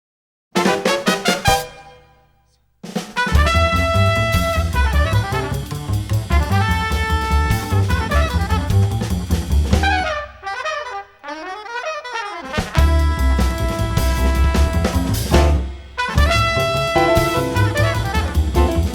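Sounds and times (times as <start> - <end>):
drum kit: 0.6 - 2.2, 2.8 - 10.8, 12.4 - 18.9
jazz horns playing: 0.6 - 2.3, 3.2 - 18.9
walking bass: 3.4 - 10.1, 12.7 - 18.9.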